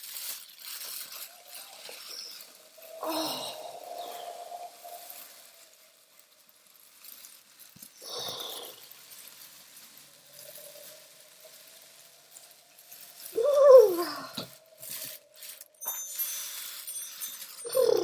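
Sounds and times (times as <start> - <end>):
short rustle: 0.0 - 18.0
wordless vocal cry: 3.0 - 5.2, 13.3 - 14.5.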